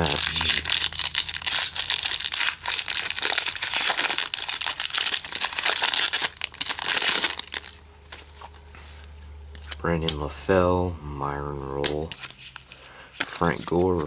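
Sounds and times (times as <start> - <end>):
foil wrapper crinkling and tearing: 0.0 - 8.6.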